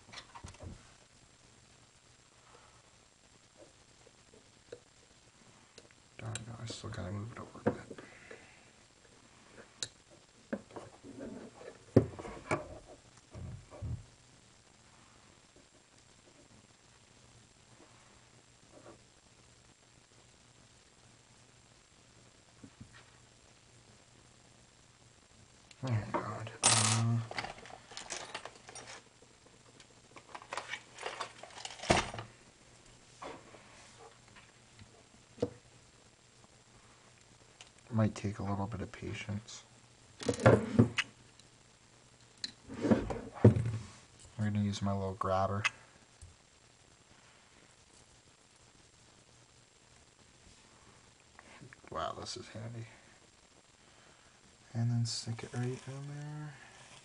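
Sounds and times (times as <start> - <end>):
soft rustling: 27.3 - 37.6, 55.0 - 57.0.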